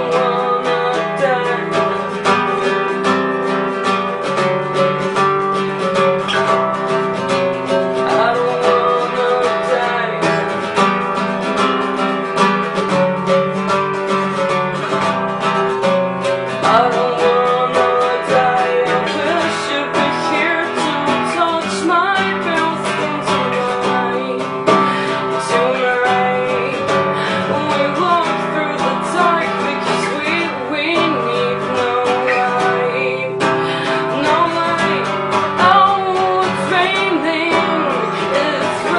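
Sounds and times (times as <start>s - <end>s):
acoustic guitar strumming: 0.0s - 38.9s
person singing: 0.0s - 38.9s.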